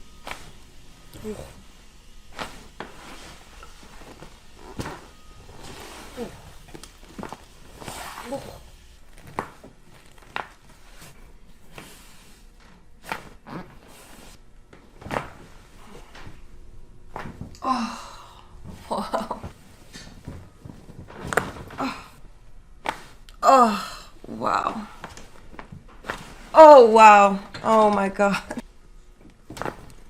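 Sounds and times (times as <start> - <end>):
chiropractic cracks and knocks: 9.1 - 10.7, 14.7 - 15.5, 17.1 - 17.6, 19.9 - 22.0, 29.2 - 30.0
person making wordless sounds: 26.5 - 28.6.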